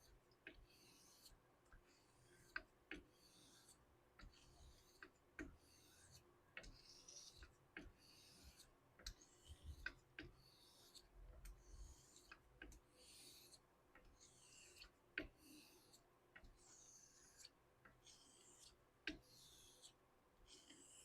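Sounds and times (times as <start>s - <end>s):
razor swishing across whetstone: 0.0s - 16.0s.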